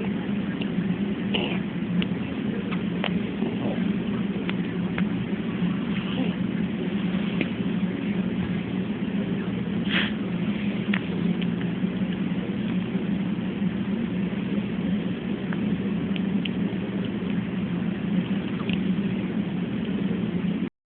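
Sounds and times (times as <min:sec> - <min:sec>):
low hum of room noise: 0:00.0 - 0:20.7.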